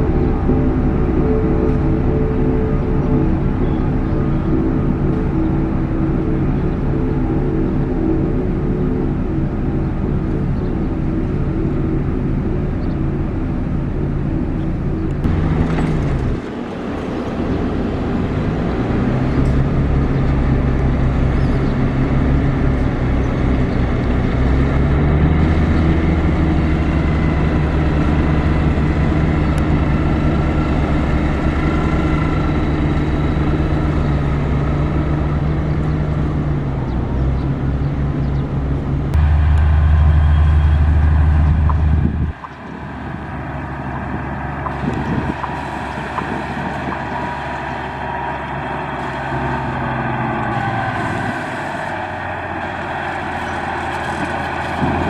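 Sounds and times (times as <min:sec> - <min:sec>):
diesel engine running under load: 0:00.0 - 0:55.0.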